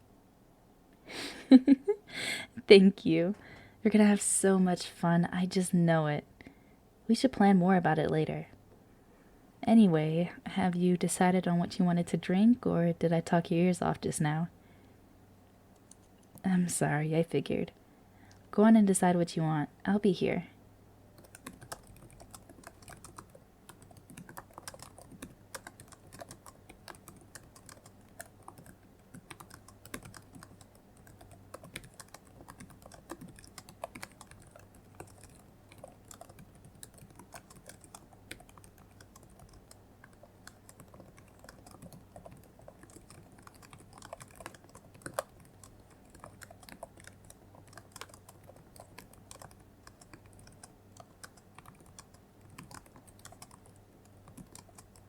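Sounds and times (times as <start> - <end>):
steady low hum: 0.0 - 55.0
computer keyboard typing: 21.2 - 55.0.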